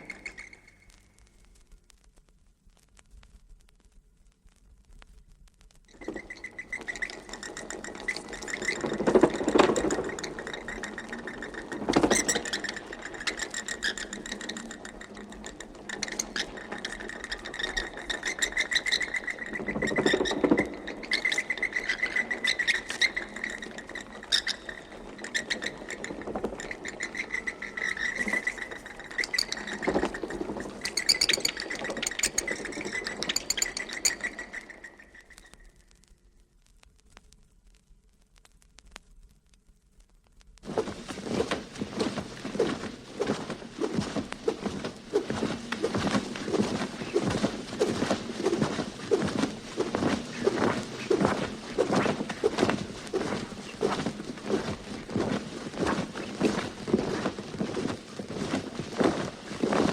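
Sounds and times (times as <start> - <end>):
bats squeaking: 0.0 - 1.0, 6.0 - 35.7, 40.8 - 57.9
fluttering clicks: 4.9 - 36.2, 40.4 - 59.9.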